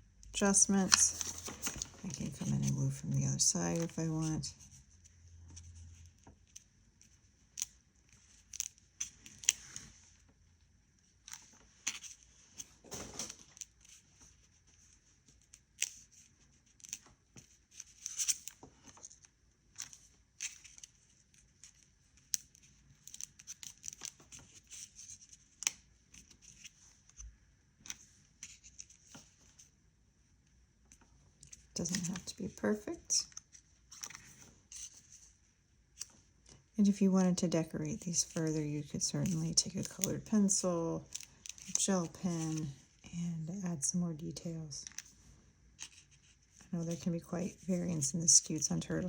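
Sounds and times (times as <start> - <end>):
paper rustling: 0.7 - 4.8, 31.4 - 32.8, 41.1 - 42.8.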